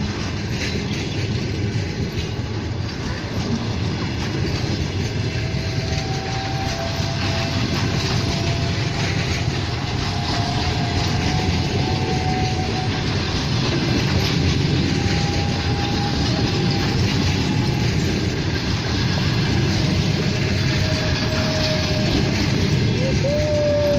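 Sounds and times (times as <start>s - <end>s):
train wheels clattering on rails: 0.0s - 23.9s
faint high squealing: 5.4s - 23.9s.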